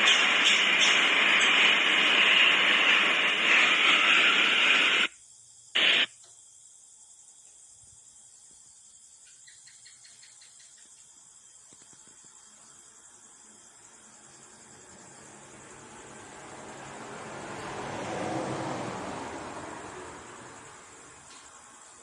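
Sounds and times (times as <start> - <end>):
wind and rain storm: 0.0 - 5.1
faint insect chirping: 5.1 - 22.0.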